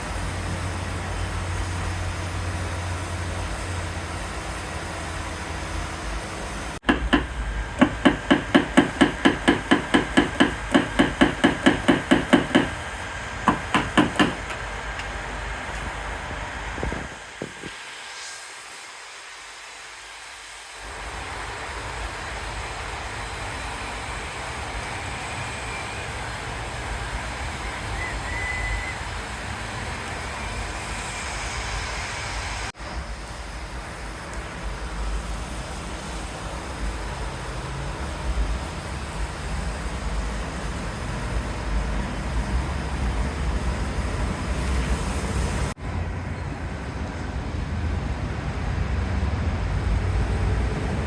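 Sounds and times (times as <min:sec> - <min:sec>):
hammer tapping on metal panel: 0:06.8 - 0:12.9, 0:13.5 - 0:14.6, 0:16.8 - 0:17.7.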